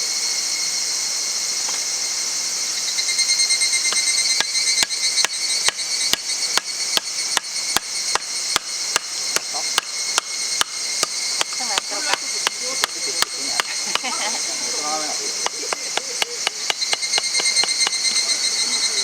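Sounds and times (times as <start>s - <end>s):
high insect chorus: 0.0s - 19.0s
steady hammer strikes: 3.9s - 14.2s, 15.4s - 18.0s.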